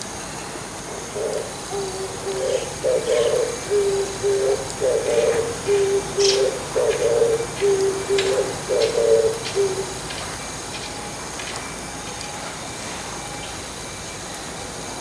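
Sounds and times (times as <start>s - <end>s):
dove cooing: 1.0s - 10.9s.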